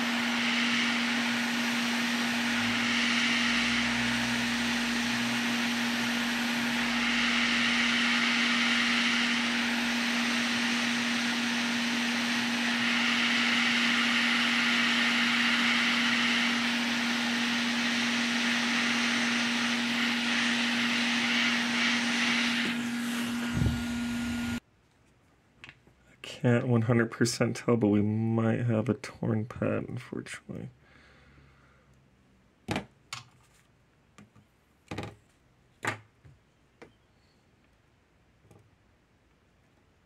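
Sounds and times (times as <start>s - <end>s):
hot air station rushing hiss: 0.0s - 24.6s
motor hum: 0.0s - 24.6s.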